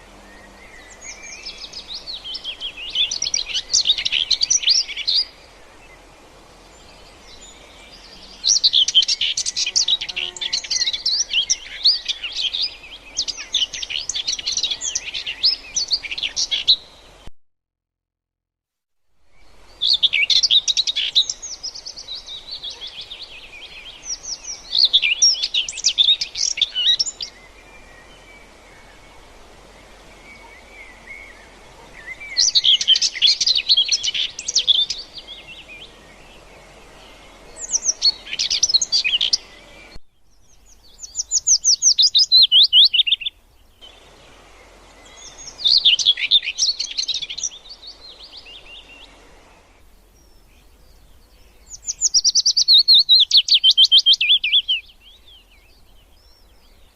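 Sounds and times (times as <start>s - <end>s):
bird chirping: 0.0s - 17.3s, 19.3s - 29.2s, 30.1s - 56.9s.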